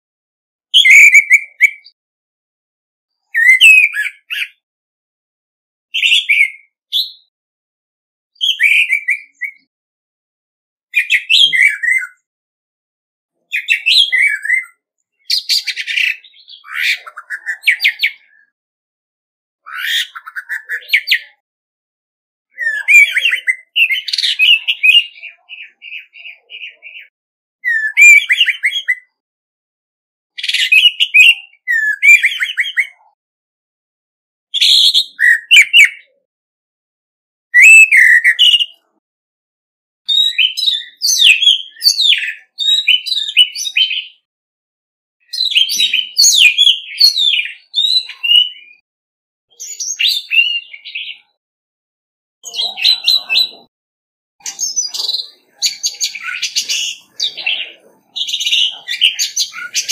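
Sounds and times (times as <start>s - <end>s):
thrush singing whistled phrases: 0.7s - 2.0s, 3.2s - 4.6s, 6.0s - 7.3s, 8.4s - 9.7s, 11.0s - 12.3s, 13.4s - 18.5s, 19.6s - 21.4s, 22.5s - 29.2s, 30.4s - 33.1s, 34.5s - 36.2s, 37.5s - 38.9s, 40.1s - 44.3s, 45.2s - 48.8s, 49.5s - 51.4s, 54.4s - 59.9s.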